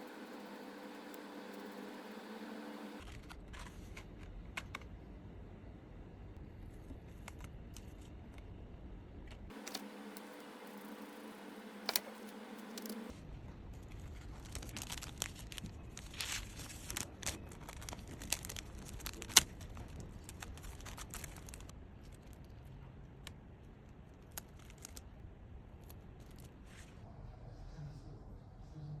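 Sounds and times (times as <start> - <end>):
squishy toy crinkling: 14.0 - 22.5.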